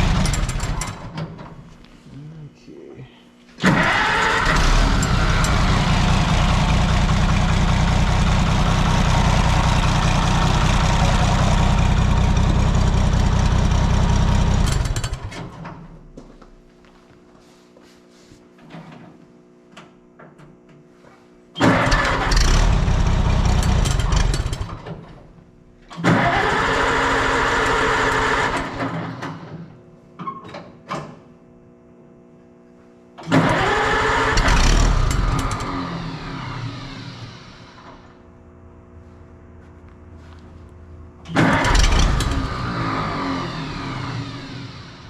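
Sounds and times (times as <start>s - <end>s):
tractor engine cranking on starter: 0.0s - 1.6s, 3.6s - 15.9s, 21.6s - 25.3s, 25.9s - 29.6s, 33.2s - 38.0s, 41.3s - 45.0s.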